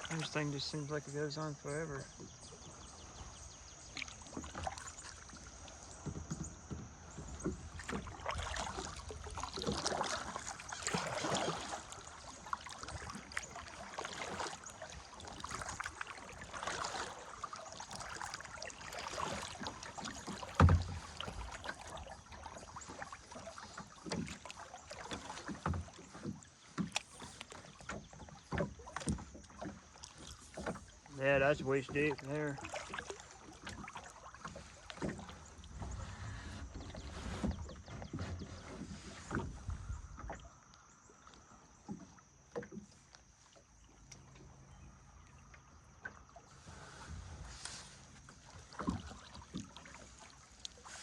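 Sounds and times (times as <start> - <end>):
paddle strokes splashing water: 0.0 - 51.0.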